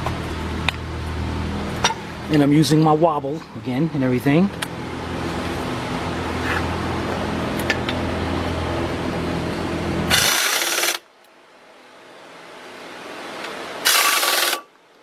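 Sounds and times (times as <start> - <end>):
impact gun whirring: 10.1 - 11.1, 13.8 - 14.7.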